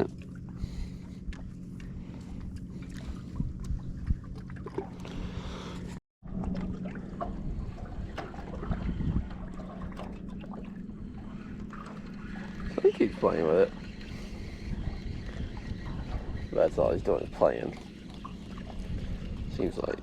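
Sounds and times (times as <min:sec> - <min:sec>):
steady low hum: 0:00.0 - 0:20.0
water against hull: 0:00.0 - 0:20.0
wind on microphone: 0:02.3 - 0:05.6, 0:07.2 - 0:13.1, 0:14.0 - 0:20.0.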